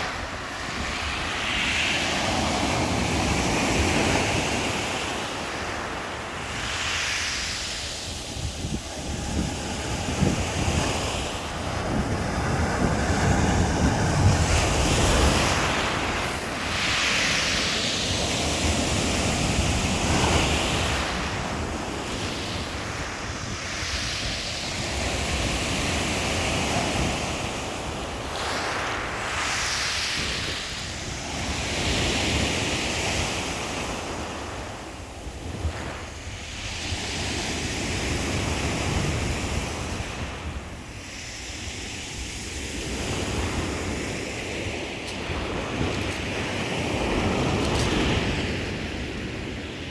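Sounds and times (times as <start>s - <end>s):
waves breaking on shore: 0.0s - 49.9s
wind buffeting microphone: 0.0s - 49.9s.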